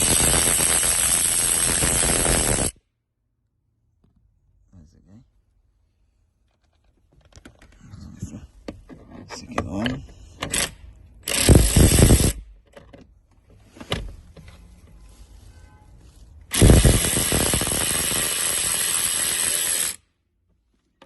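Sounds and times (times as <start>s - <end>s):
handheld power tool running: 0.0s - 2.8s, 10.6s - 12.4s, 16.5s - 20.0s.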